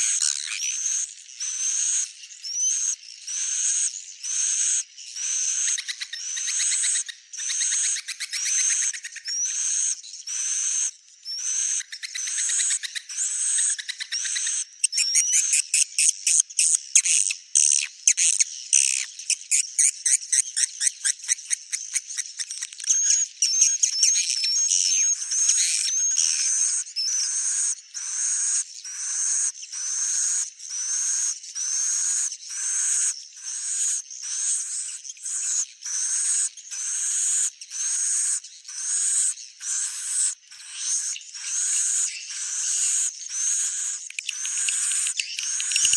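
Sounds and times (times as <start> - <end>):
rapid chattering calls: 34.5 - 45.9.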